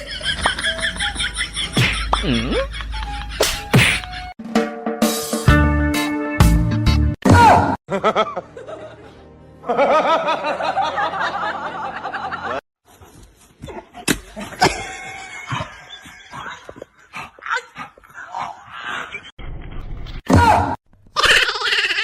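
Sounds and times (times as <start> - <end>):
laughter: 0.0 - 3.4, 7.9 - 12.6, 13.7 - 17.0
music: 2.4 - 12.6.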